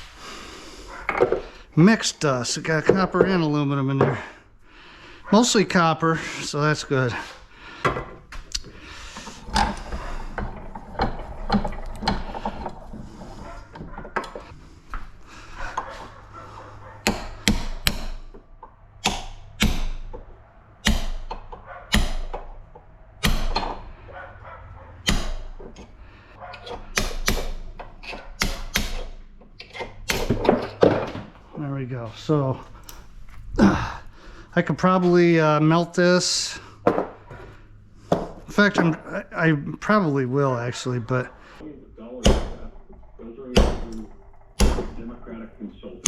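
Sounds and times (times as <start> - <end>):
tools scraping metal: 7.0 - 31.6
knocks and strikes on metal: 17.0 - 24.1, 25.0 - 31.4, 42.2 - 45.2.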